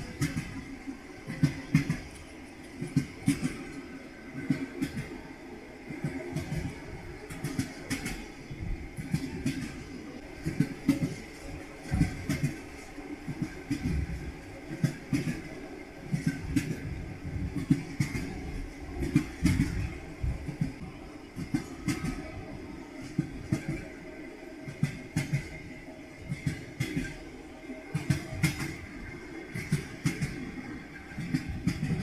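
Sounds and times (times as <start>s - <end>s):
train wheels clattering over rail joints: 0.0s - 5.2s, 5.9s - 20.8s, 21.4s - 24.0s, 24.7s - 27.2s, 27.9s - 32.0s
low rumble of moving train: 0.0s - 32.0s.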